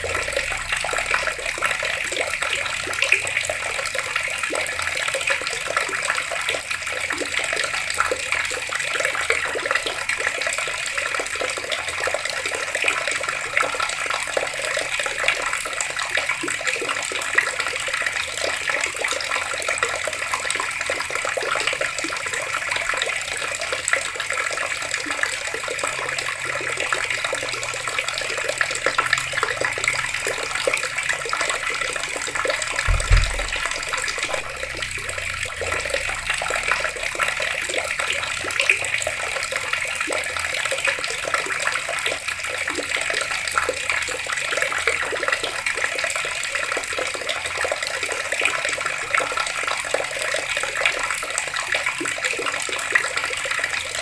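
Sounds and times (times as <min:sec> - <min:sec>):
water running from taps: 0:00.0 - 0:54.0
brief low thump: 0:32.9 - 0:35.7.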